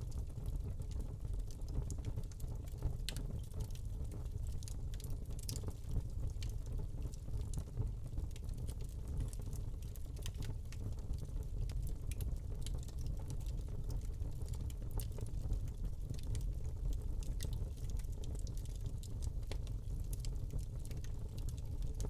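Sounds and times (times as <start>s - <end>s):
burning log crackles and pops: 0.0s - 22.0s.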